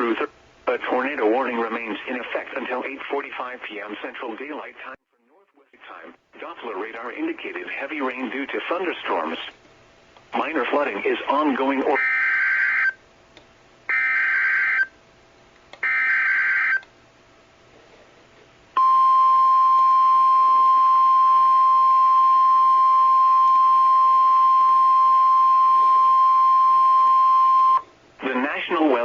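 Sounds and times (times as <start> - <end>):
steady warning alarm tone: 11.9 - 13.0, 13.9 - 15.0, 15.8 - 16.8, 18.8 - 27.8.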